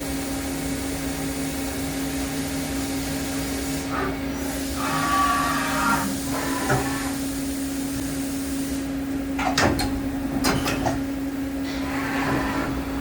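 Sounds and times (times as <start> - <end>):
machining center humming: 0.0 - 13.0
sharp mechanical clunks: 9.4 - 11.1.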